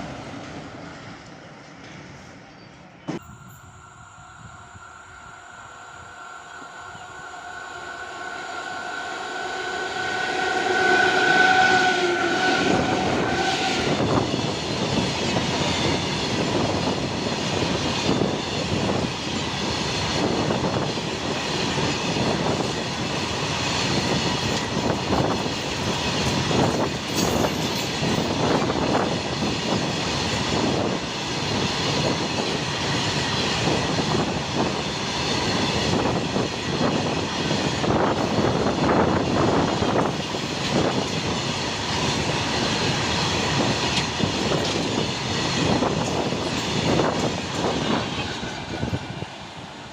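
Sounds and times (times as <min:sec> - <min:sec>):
locomotive horn blast: 0:06.6 - 0:14.2.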